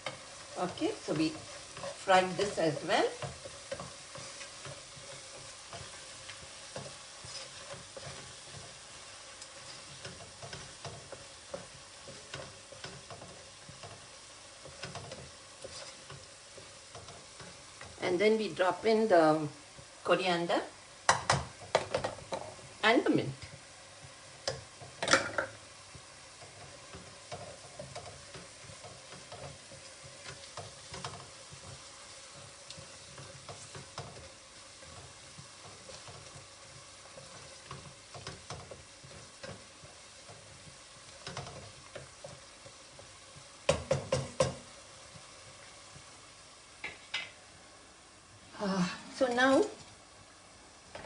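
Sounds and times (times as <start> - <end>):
masala sizzling in a pot: 0.0 - 51.0
spoon scraping a pot: 3.2 - 8.6, 14.7 - 16.2
spoon knocking on a pot: 21.1 - 22.5, 43.7 - 44.6.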